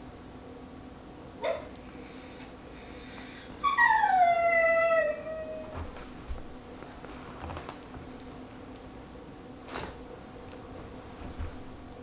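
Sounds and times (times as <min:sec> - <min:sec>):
dog whining: 0:01.4 - 0:06.0.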